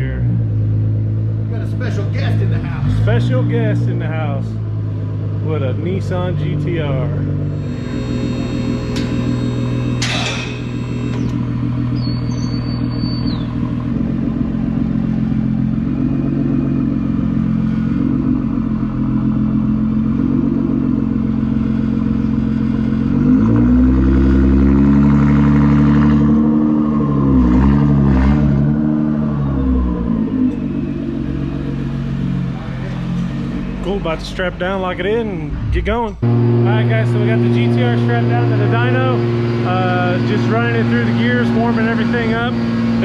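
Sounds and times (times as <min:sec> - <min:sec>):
car engine idling and revving: 0:00.0 - 0:43.0
sharp clatter: 0:07.5 - 0:13.6.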